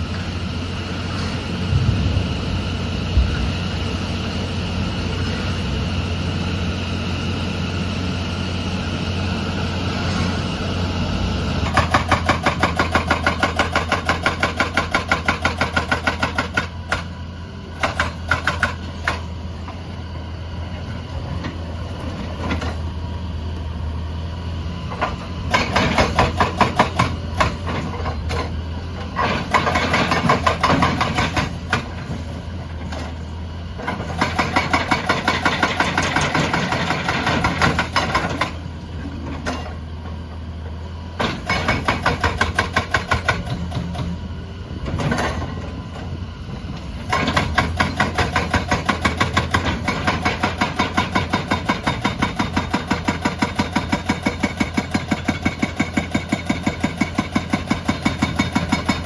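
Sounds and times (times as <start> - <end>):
diesel engine running: 0.0 - 59.0
hydraulic breaker hammer pounding: 11.6 - 17.2, 17.8 - 19.3, 25.0 - 28.6, 29.2 - 32.0, 33.8 - 38.6, 41.2 - 44.1, 46.9 - 59.0.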